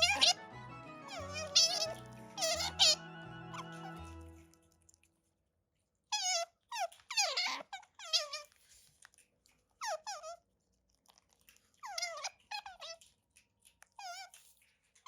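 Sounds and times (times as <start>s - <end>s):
otter squeaky chirps: 0.0s - 4.7s.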